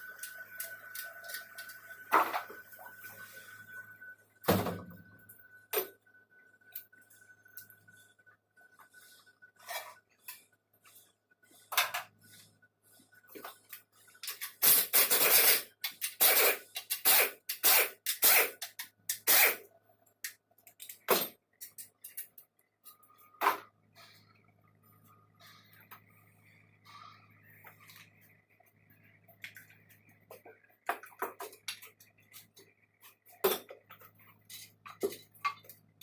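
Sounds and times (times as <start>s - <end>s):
metal engine parts clinking: 20.8s - 23.7s.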